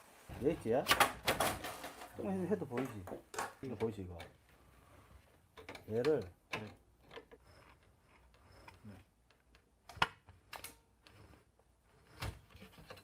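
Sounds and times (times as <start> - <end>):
clicks and knocks of printer parts: 5.5 - 7.4.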